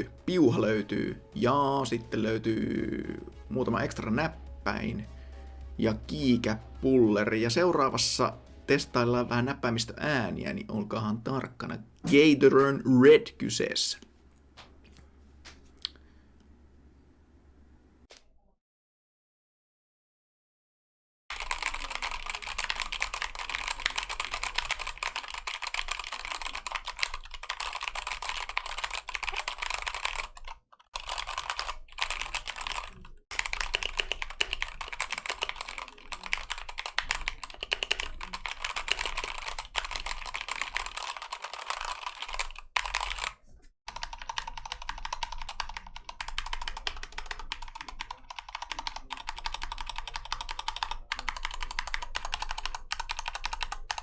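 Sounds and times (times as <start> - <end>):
fast typing on mechanical keyboard: 21.3 - 54.0.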